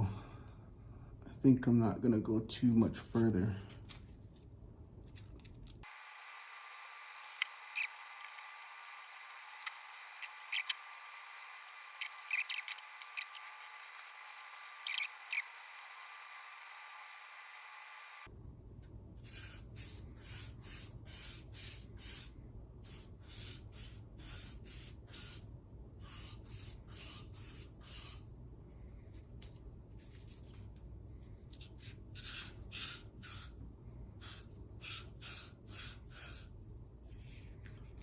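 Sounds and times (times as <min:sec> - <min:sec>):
sandpaper rubbing on metal: 0:10.2 - 0:10.8, 0:12.0 - 0:15.4.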